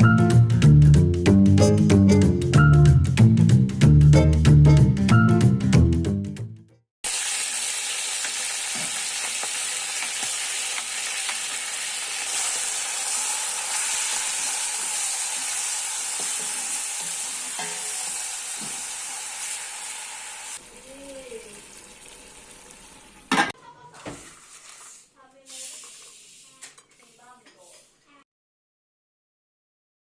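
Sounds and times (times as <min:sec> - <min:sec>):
food sizzling in a pan: 0:07.0 - 0:23.4, 0:24.0 - 0:28.0.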